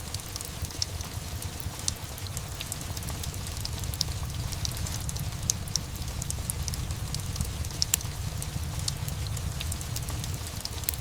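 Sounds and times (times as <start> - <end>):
steady rain: 0.0 - 11.0
fireplace crackling and popping: 0.1 - 11.0.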